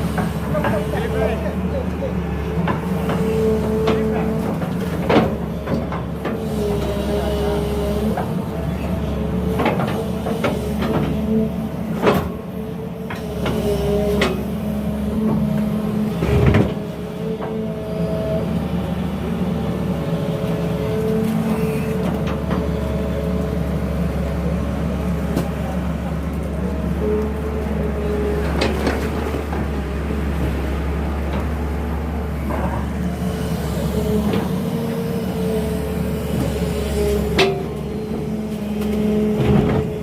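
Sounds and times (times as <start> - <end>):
excavator engine droning: 0.0 - 40.0.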